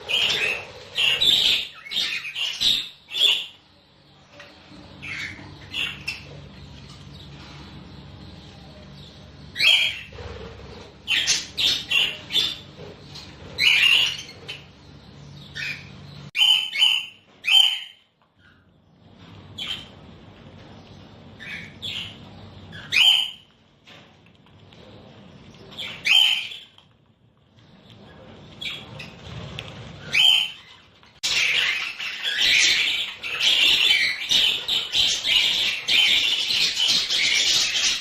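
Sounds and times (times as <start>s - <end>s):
budgerigars squawking and chirping: 0.0s - 3.6s, 4.9s - 7.5s, 8.3s - 14.7s, 15.3s - 18.6s, 21.4s - 23.5s, 25.7s - 26.7s, 30.0s - 38.0s.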